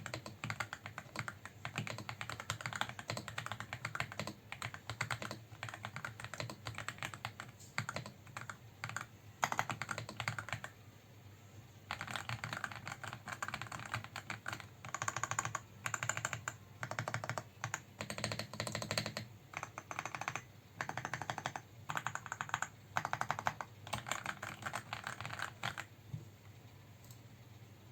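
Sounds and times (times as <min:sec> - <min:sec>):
mechanical keyboard typing: 0:00.0 - 0:10.7, 0:11.9 - 0:25.9.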